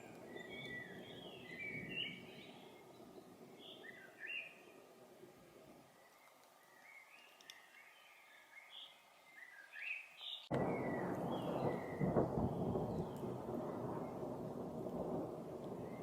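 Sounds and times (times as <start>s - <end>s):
thunder rumbling: 0.0s - 4.2s, 10.5s - 16.0s
songbird chirping: 0.0s - 16.0s.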